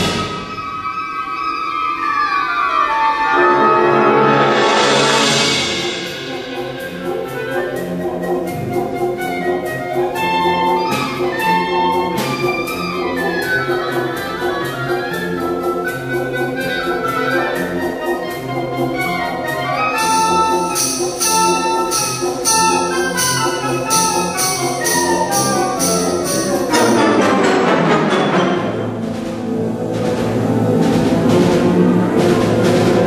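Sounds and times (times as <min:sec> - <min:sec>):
concert wind band playing: 0:00.0 - 0:02.0, 0:02.7 - 0:33.0
percussion beat: 0:05.3 - 0:09.3, 0:20.0 - 0:27.3.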